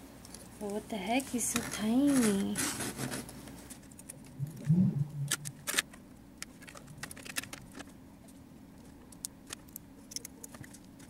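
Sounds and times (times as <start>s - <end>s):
low hum of a voice: 0.6s - 2.8s
plastic figure parts clicking: 8.8s - 11.0s.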